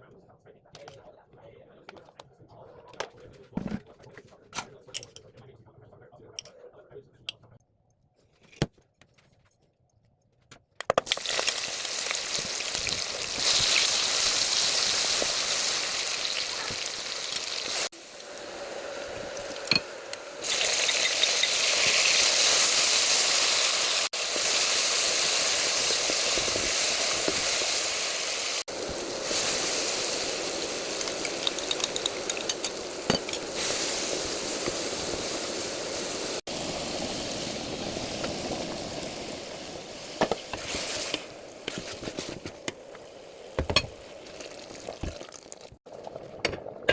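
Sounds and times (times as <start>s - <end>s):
hot oil sizzling: 11.0s - 46.9s.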